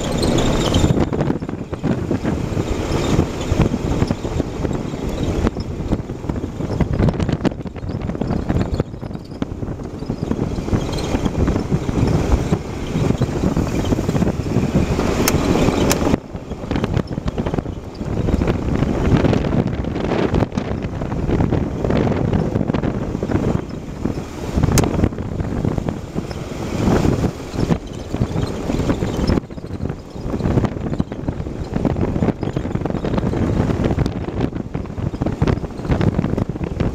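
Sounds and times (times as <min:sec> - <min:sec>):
car road and wind noise: 0:00.0 - 0:36.9
sharp clicks or creaks: 0:15.0 - 0:18.5.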